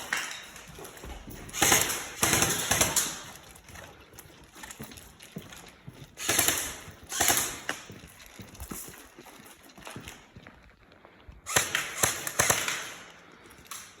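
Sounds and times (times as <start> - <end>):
airsoft guns firing bursts: 1.5 - 3.5, 6.2 - 7.9, 11.5 - 13.2.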